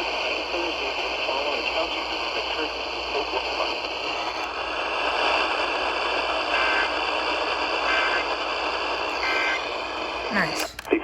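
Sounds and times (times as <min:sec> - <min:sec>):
radio static hiss: 0:00.0 - 0:11.0
faint data tone bursts: 0:09.0 - 0:10.9.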